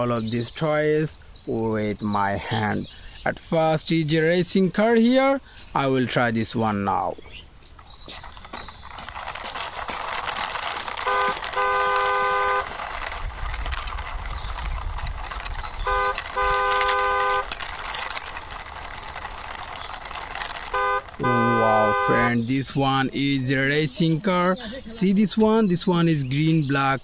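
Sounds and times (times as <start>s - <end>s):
toy car wheels whirring: 7.6s - 24.1s
electronic horn beeps: 11.0s - 12.7s, 15.8s - 17.5s, 20.7s - 22.4s.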